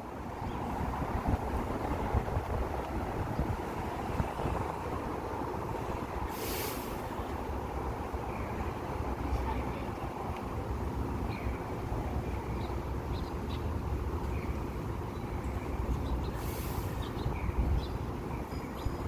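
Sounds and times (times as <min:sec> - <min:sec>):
street traffic rumble: 0:00.0 - 0:19.0
brief hiss: 0:06.3 - 0:07.2, 0:16.3 - 0:17.2
bird chirps: 0:14.4 - 0:19.0.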